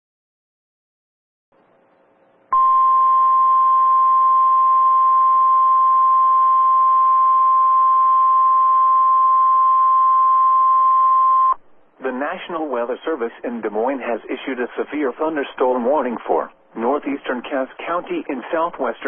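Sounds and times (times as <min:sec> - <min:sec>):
loud steady alarm beep: 0:02.5 - 0:11.6
faint radio hiss: 0:11.6 - 0:19.0.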